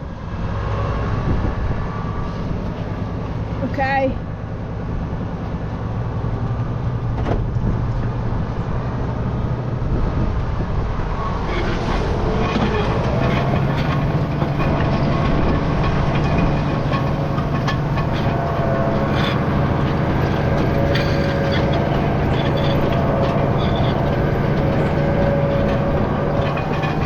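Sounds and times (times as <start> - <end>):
tractor engine running: 0.0 - 27.0
rattling metal clatter: 11.5 - 27.0.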